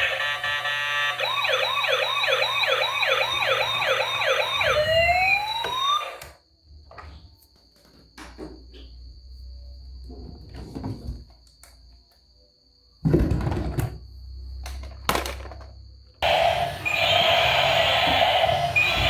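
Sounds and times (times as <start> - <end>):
toy police siren wailing: 0.0 - 6.4, 16.2 - 19.0.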